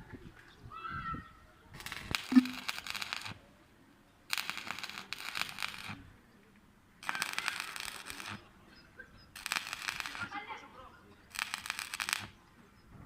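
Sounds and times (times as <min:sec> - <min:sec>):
welding arc crackling: 0:01.8 - 0:03.4, 0:04.3 - 0:06.0, 0:07.0 - 0:08.5, 0:09.4 - 0:10.4, 0:11.3 - 0:12.4.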